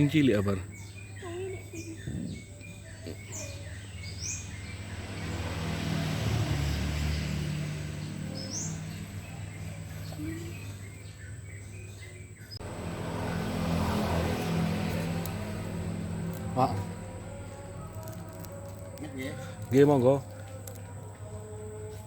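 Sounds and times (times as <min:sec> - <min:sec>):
bird chirps: 0:00.0 - 0:05.3
vehicle engine running: 0:00.6 - 0:11.8, 0:12.6 - 0:22.0.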